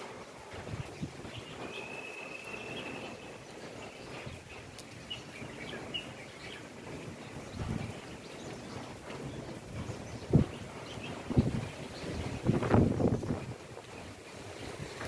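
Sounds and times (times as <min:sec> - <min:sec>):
bird whistling and chirping: 0:01.4 - 0:04.0.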